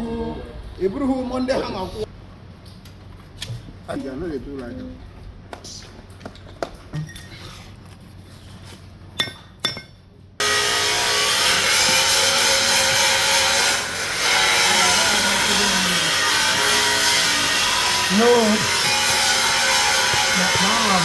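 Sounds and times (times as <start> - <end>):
loud power tool running: 10.4 - 21.0.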